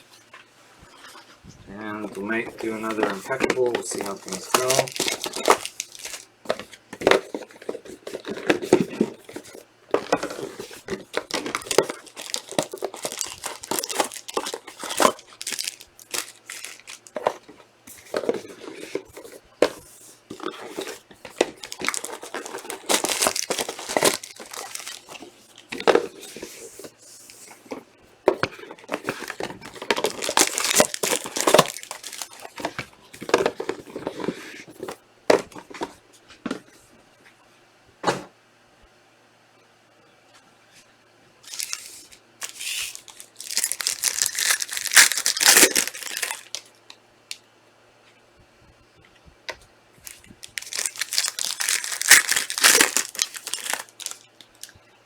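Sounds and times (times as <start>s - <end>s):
card packaging torn and crinkled: 2.2s - 9.5s, 10.1s - 17.4s, 20.5s - 25.3s, 28.9s - 32.8s, 41.5s - 46.7s, 50.1s - 54.7s.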